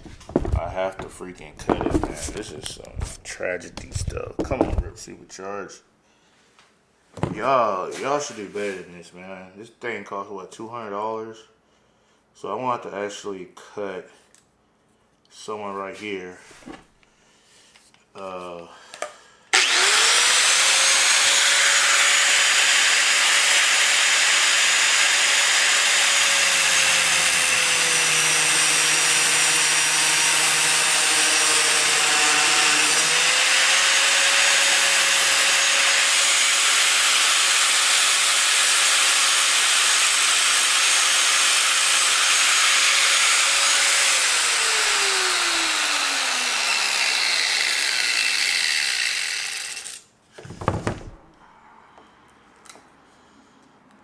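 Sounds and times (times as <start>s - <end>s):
power tool cutting: 19.6s - 50.0s.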